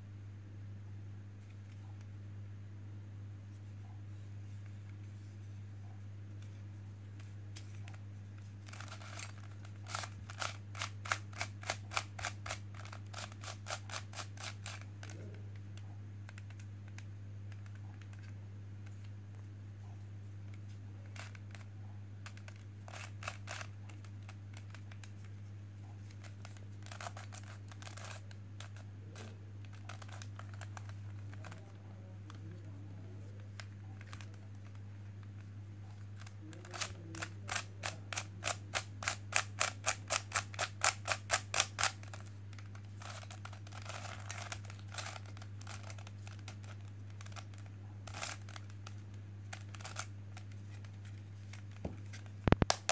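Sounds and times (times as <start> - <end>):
steady low hum: 0.0 - 52.9
plastic puzzle cube clicks: 8.7 - 15.1, 36.2 - 50.6, 51.5 - 52.9.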